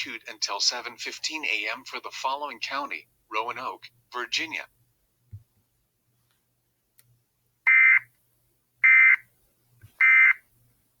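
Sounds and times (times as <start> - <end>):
emergency alert data tones: 7.7 - 8.0, 8.8 - 9.2, 10.0 - 10.4.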